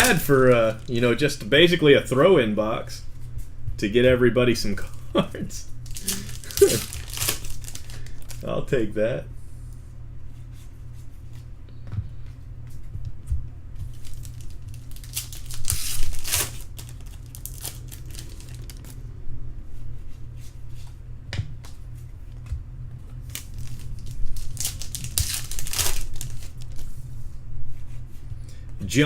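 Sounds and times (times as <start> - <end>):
wrapper tearing: 0.0 - 1.1, 5.8 - 8.5, 13.9 - 19.0, 23.2 - 26.9
wrapper crinkling: 0.0 - 1.2, 5.8 - 8.5, 13.8 - 19.0, 23.2 - 27.0.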